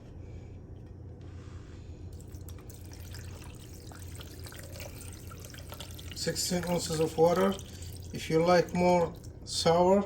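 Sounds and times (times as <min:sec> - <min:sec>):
low steady hum: 0:00.0 - 0:10.0
water pouring into blender jar: 0:02.2 - 0:09.3.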